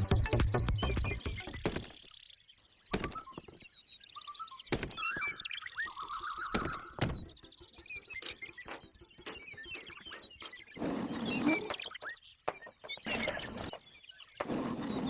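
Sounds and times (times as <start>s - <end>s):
birds chirping: 0.2s - 15.0s
sharp knocks and thuds: 12.5s - 13.8s.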